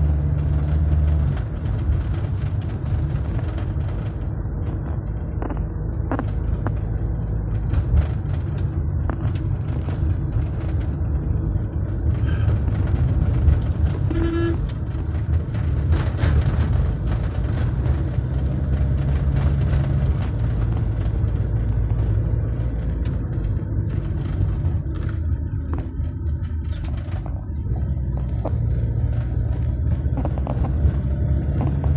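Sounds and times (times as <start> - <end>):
traffic engine rumble: 0.0 - 31.9
car horn toot: 14.0 - 14.8.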